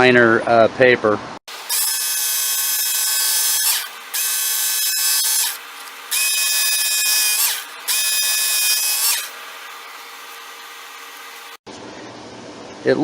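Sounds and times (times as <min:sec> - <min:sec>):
electric belt sharpener whine: 0:01.5 - 0:11.6.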